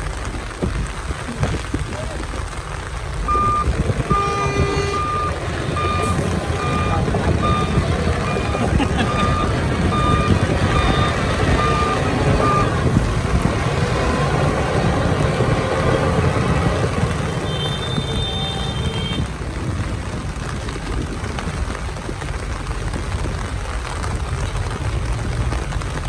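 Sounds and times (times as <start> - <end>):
heavy diesel machinery running: 2.8 - 20.3
high beeping tone: 3.3 - 12.8
reversing alarm beeps: 3.3 - 12.8.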